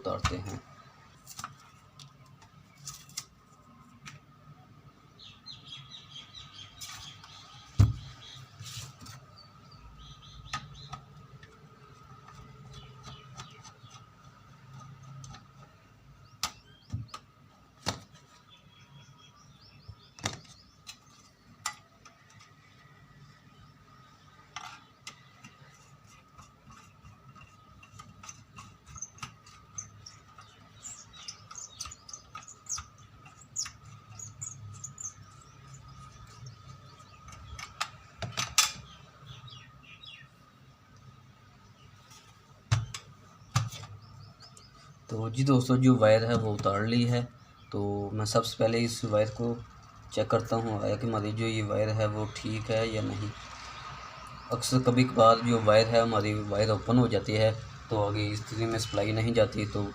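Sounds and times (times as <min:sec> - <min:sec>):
thin steady background hum: 0:00.0 - 0:59.9
hand tools clicking and scraping: 0:24.5 - 0:35.2, 0:36.2 - 0:38.8.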